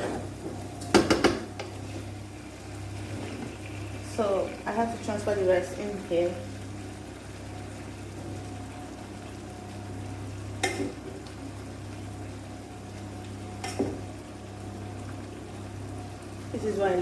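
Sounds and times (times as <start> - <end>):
faint frying sizzle: 0.0 - 17.0
steady low hum: 0.0 - 17.0
spoon knocking against pot: 0.9 - 1.7.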